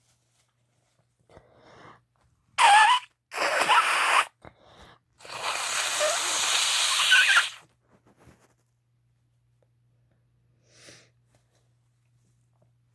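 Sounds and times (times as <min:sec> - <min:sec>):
person sneezing: 0:02.6 - 0:04.3
hissing rush of breath: 0:05.2 - 0:07.6.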